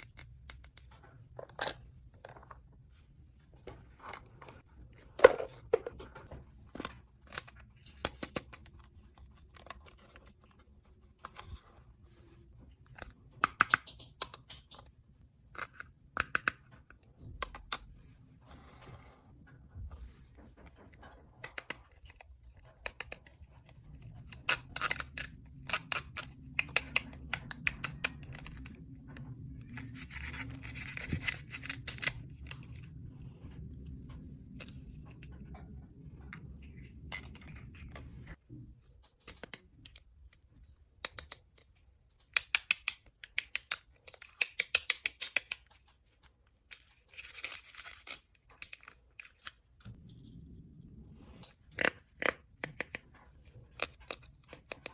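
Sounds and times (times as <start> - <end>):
plastic parts clicking and tapping: 3.6 - 10.6, 12.8 - 18.0, 20.2 - 32.8, 36.3 - 49.6, 51.7 - 54.9
low steady hum: 14.8 - 42.1, 46.7 - 54.9.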